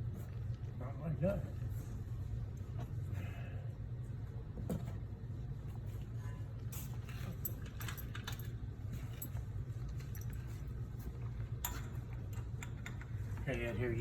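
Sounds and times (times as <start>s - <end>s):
steady low hum: 0.0s - 14.0s
metal tools clinking and rattling: 6.7s - 10.6s, 11.6s - 13.6s.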